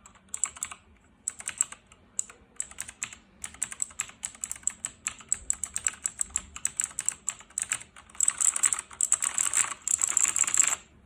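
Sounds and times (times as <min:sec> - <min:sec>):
mechanical keyboard typing: 0:00.0 - 0:10.9.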